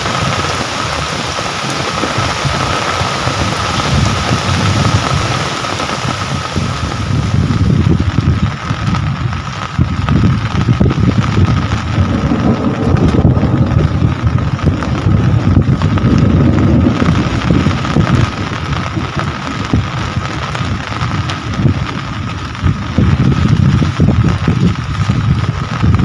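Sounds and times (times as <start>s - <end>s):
heavy rain: 0.0s - 26.0s
low uneven rumble: 6.8s - 26.0s.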